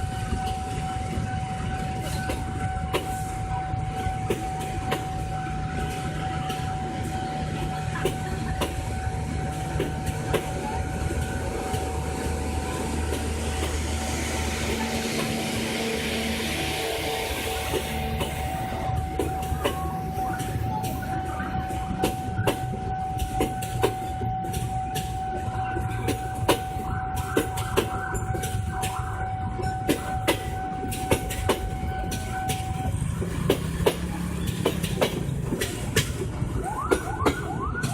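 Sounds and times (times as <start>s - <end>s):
steady high tone: 0.0s - 30.9s
low train rumble: 0.0s - 37.9s
train wheels clicking over rail joints: 0.0s - 37.9s.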